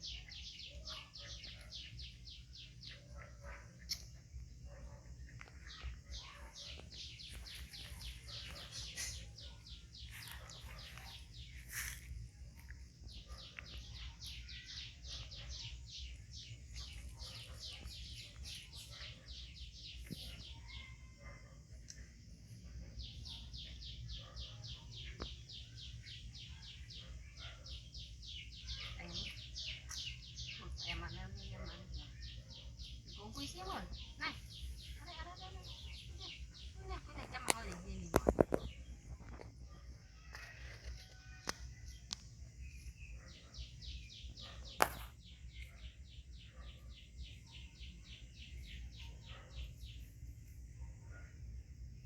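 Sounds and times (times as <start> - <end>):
bird chirping: 0.0 - 52.0.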